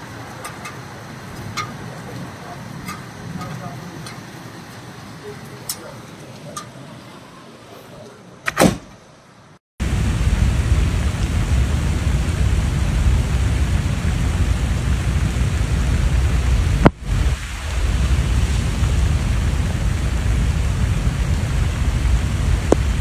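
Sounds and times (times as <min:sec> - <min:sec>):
sharp crack: 0:00.0 - 0:07.2, 0:08.4 - 0:09.1, 0:10.4 - 0:23.0
wind rumble on microphone: 0:00.0 - 0:08.1, 0:09.8 - 0:23.0
heavy rain downpour: 0:00.0 - 0:08.5, 0:09.2 - 0:23.0
sharp click: 0:08.4 - 0:09.0.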